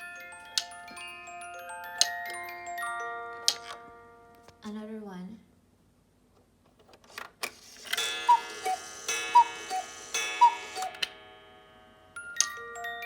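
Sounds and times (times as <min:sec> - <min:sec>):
cuckoo clock calling: 0:00.0 - 0:03.9, 0:07.7 - 0:13.0
music box tinkling tune: 0:00.0 - 0:04.4, 0:07.8 - 0:13.0
clock mechanism clicks: 0:07.4 - 0:11.2.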